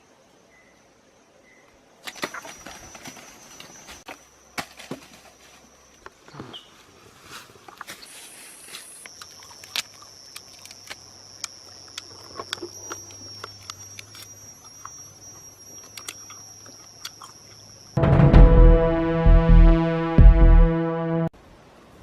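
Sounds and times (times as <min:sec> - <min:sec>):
high-pitched insect drone: 0:10.2 - 0:18.0
loud synthesizer music: 0:18.0 - 0:21.3.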